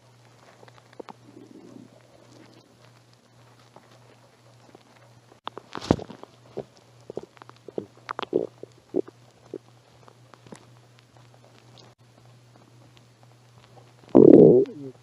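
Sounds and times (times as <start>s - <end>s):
stomach growling and gurgling: 0.1s - 5.0s, 5.8s - 13.0s, 13.6s - 15.0s.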